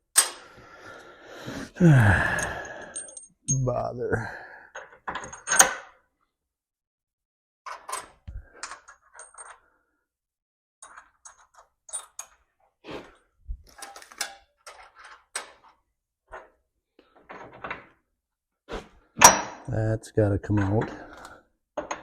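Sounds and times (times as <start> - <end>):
metal tools clinking: 2.4 - 3.7.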